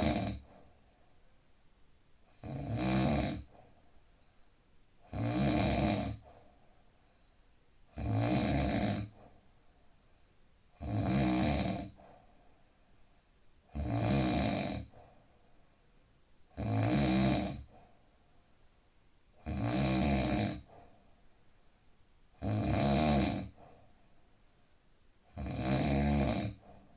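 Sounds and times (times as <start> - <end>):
man snoring: 0.0 - 0.5, 2.4 - 3.5, 5.1 - 6.2, 8.0 - 9.2, 10.8 - 12.0, 13.7 - 14.9, 16.6 - 17.7, 19.4 - 20.7, 22.4 - 23.6, 25.4 - 26.6
quiet breathing: 0.0 - 8.0, 8.6 - 13.8, 14.6 - 16.6, 17.3 - 26.9.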